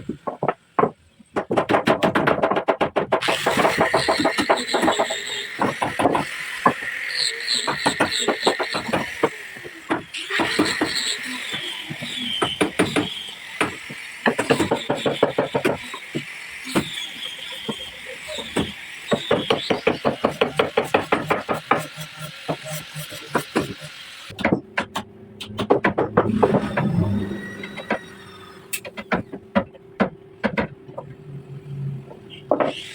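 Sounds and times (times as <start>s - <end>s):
hammer knocking on wood: 0.0s - 6.8s, 18.6s - 22.7s, 24.4s - 26.9s.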